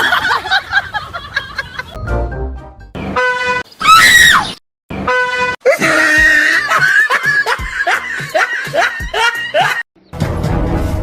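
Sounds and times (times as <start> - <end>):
train horn blast: 5.0 - 5.6
person screaming: 5.6 - 6.9.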